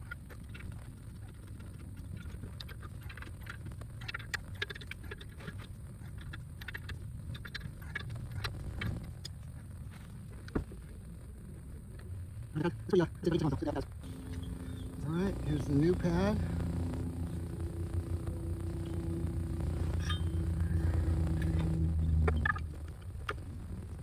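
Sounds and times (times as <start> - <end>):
steady low rumble: 14.0 - 24.0.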